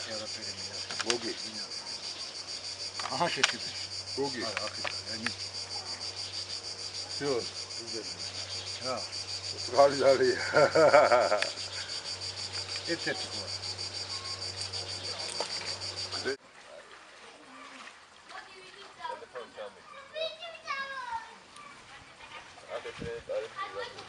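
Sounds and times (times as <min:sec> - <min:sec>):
insects chirping in a trill: 0:00.0 - 0:16.4.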